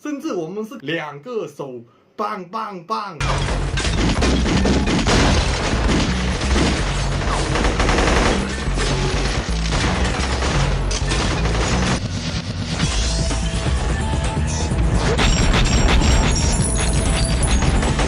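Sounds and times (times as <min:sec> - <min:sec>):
rapid gunfire: 0:03.8 - 0:12.9, 0:15.1 - 0:18.0.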